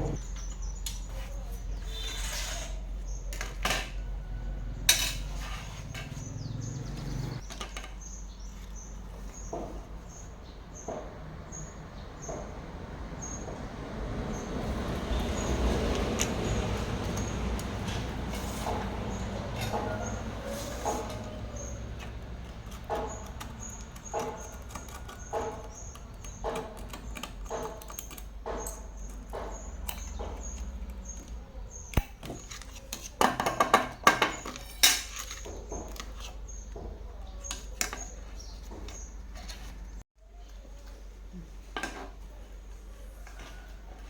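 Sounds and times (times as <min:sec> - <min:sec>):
steady low hum: 0:00.0 - 0:00.3.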